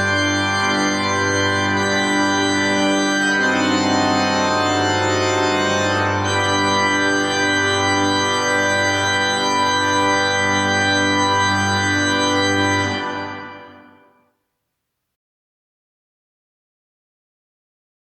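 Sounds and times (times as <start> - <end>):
church organ playing: 0.0 - 14.2.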